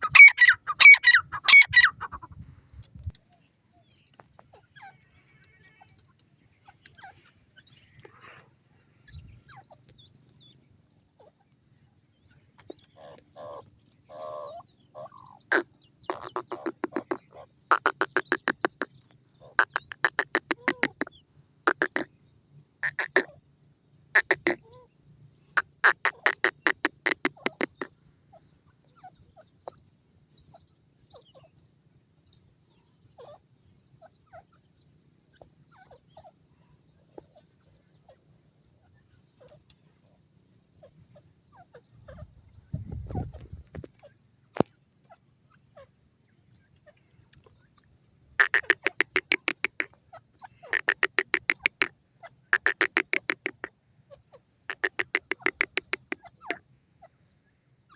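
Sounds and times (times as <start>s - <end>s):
bird calling rapid high notes: 0.0s - 2.2s, 48.4s - 49.9s, 50.7s - 51.9s
chicks peeping: 0.0s - 2.4s, 14.3s - 18.9s, 48.4s - 50.0s, 50.6s - 51.9s, 52.6s - 53.7s, 54.7s - 56.6s.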